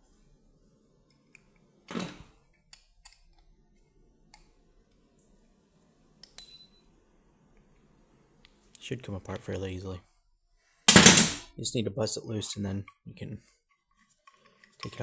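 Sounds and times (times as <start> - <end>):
loud knock: 10.9 - 11.5.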